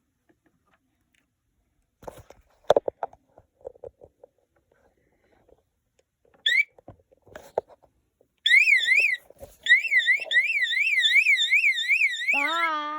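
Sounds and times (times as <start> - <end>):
electronic siren warbling: 8.5 - 12.9.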